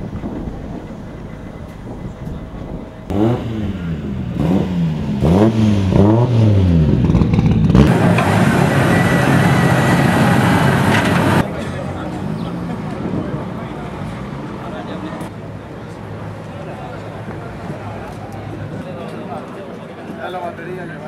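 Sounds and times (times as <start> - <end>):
loud even rushing noise: 0.0 - 11.5
rally car engine revving: 0.2 - 11.5.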